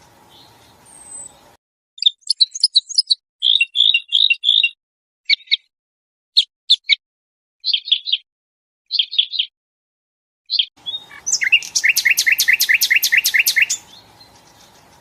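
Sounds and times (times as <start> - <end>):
faint background hum: 0.0 - 1.6, 10.8 - 15.0
songbird chirping: 0.0 - 5.7, 7.6 - 8.3, 8.9 - 9.5, 10.5 - 15.0.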